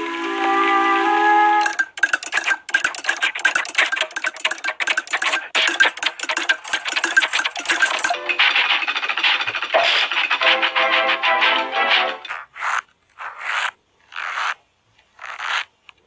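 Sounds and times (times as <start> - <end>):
rapid mechanical clattering: 1.6 - 12.4.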